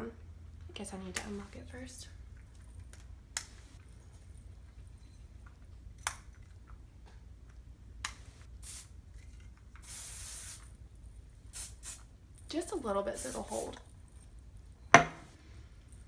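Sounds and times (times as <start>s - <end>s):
hairspray hiss: 8.6s - 8.9s, 9.8s - 10.7s, 11.6s - 12.0s, 13.1s - 13.8s.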